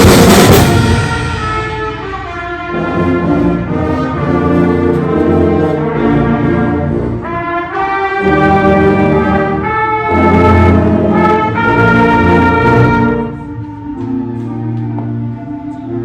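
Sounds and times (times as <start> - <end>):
school band playing: 0.0 - 16.0.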